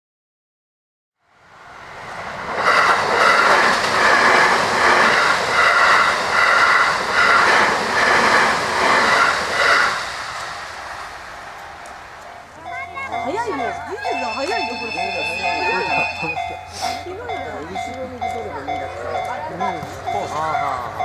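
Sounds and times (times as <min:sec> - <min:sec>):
approaching train: 0:01.2 - 0:21.0
regular pulsing beat: 0:12.4 - 0:21.0.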